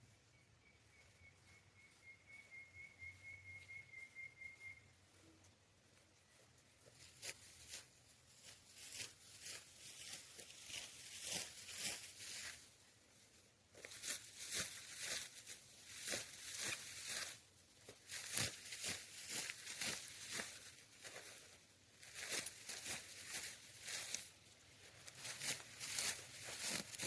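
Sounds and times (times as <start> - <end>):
rustling crunching strokes: 6.8 - 12.8, 13.8 - 27.0.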